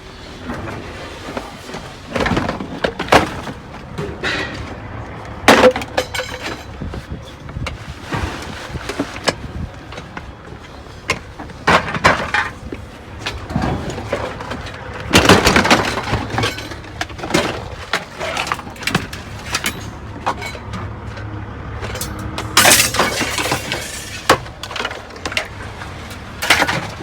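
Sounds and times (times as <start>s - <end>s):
scrap metal clanking: 0.4s - 4.9s, 11.2s - 27.0s.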